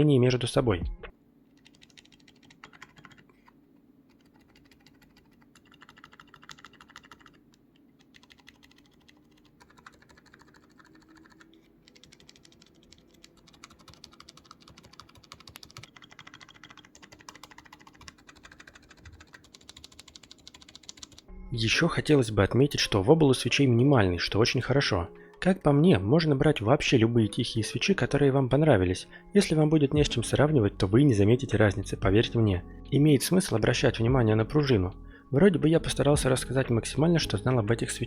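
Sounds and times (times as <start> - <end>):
soft muted keyboard typing: 1.5 - 21.3.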